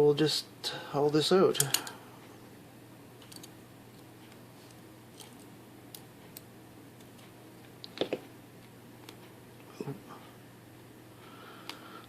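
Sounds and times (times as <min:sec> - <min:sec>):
faint metal lock parts clicking: 0:03.2 - 0:03.5.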